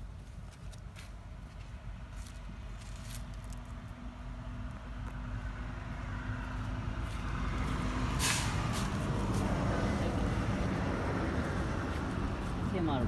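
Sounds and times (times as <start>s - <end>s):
short hiss: 8.2s - 8.6s.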